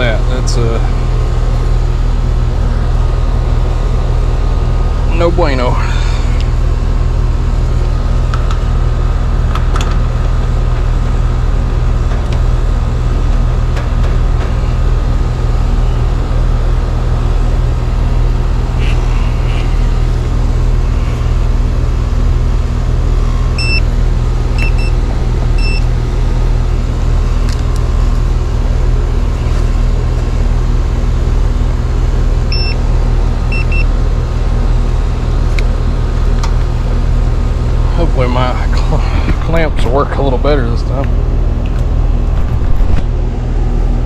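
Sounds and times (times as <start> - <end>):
air conditioner humming: 0.0 - 44.0
short electronic beeps: 23.6 - 23.8, 24.6 - 25.0, 25.6 - 25.8, 32.5 - 32.8.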